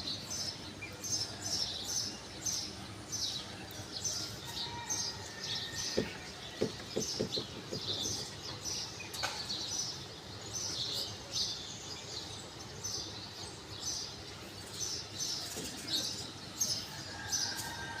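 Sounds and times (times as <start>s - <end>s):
songbirds chirping: 0.0s - 18.0s.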